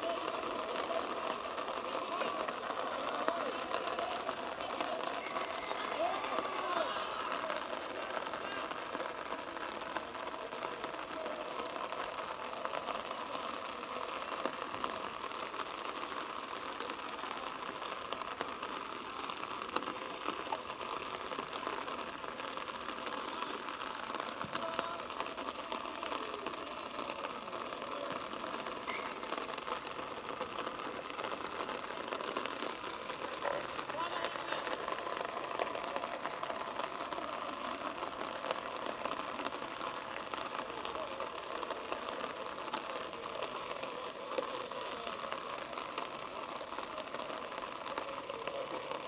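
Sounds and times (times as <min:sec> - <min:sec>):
faint distant shouts and voices: 0:00.0 - 0:49.0
outdoor background noise: 0:00.0 - 0:49.0.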